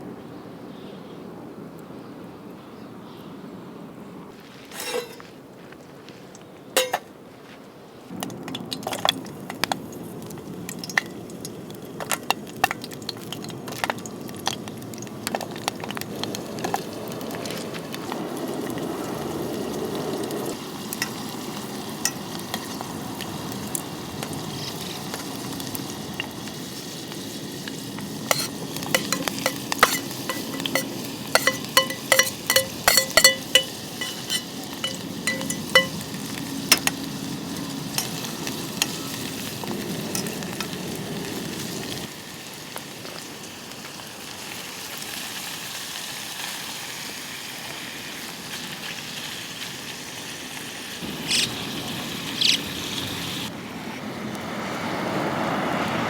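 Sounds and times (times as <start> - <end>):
utensil clinking against metal pot: 4.7 - 5.2, 6.8 - 7.1, 27.6 - 37.1
food sizzling in a pot: 8.4 - 53.5.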